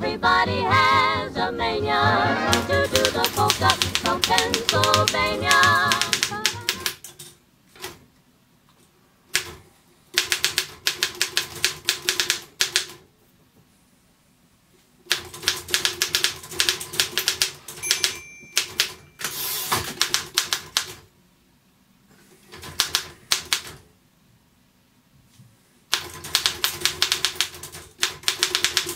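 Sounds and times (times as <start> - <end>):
typewriter key strikes: 2.5 - 7.4, 15.1 - 20.9, 26.0 - 28.9
typewriter carriage return scrape: 16.5 - 20.2
typewriter bell ring: 17.7 - 19.6.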